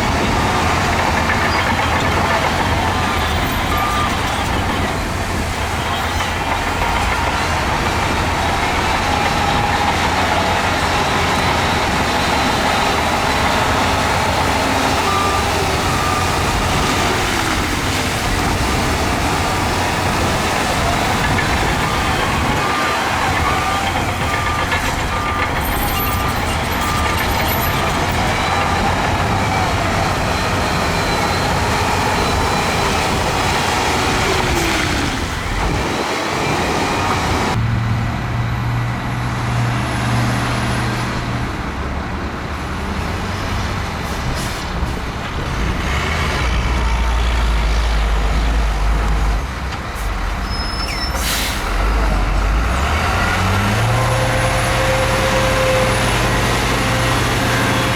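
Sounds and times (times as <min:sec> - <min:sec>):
heavy diesel machinery running: 0:00.0 - 0:57.9
reversing alarm beeping: 0:01.5 - 0:04.8, 0:08.7 - 0:17.5, 0:19.5 - 0:34.8.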